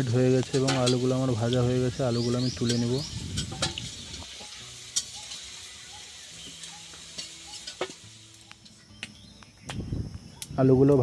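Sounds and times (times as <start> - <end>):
potatoes sizzling in hot oil: 0.0 - 9.3
spoon clinking against pan: 2.4 - 8.0.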